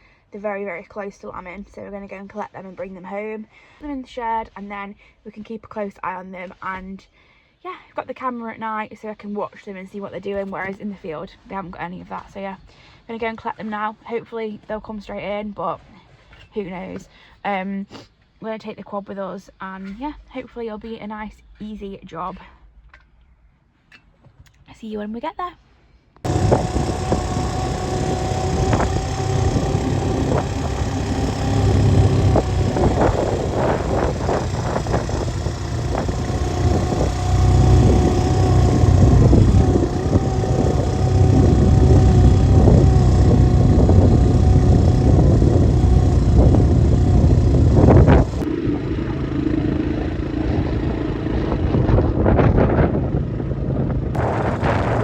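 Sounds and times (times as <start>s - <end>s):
vehicle engine rumble: 26.2s - 55.0s.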